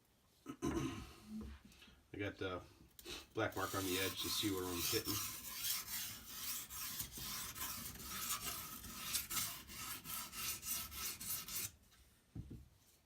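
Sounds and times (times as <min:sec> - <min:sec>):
sharpening stone rubbing knife: 0:03.5 - 0:11.7.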